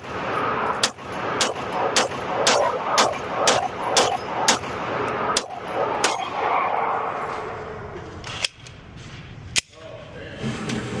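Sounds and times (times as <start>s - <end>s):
pistol shots: 0.8s - 6.4s.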